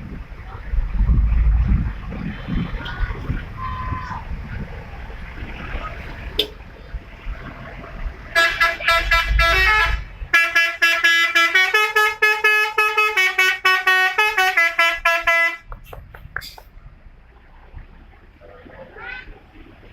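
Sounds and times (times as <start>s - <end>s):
bus horn playing a tune: 8.3s - 15.7s.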